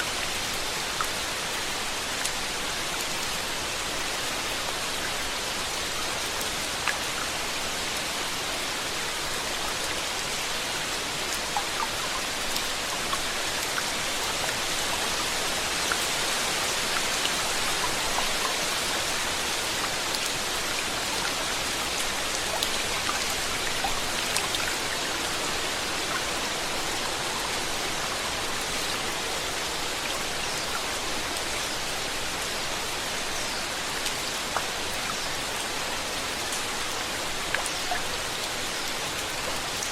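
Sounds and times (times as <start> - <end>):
raindrops ticking on a surface: 0.0 - 39.9
steady rainfall: 0.0 - 39.9.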